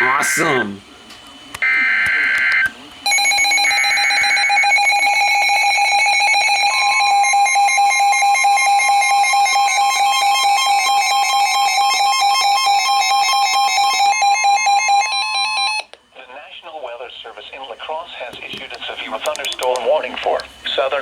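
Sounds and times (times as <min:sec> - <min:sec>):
steady electronic alert tones: 0:01.6 - 0:15.9.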